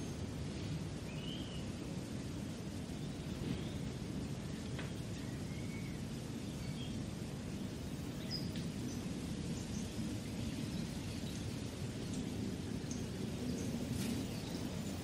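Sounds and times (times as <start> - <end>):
faint bird chirps: 1.0 - 1.8, 2.9 - 7.0.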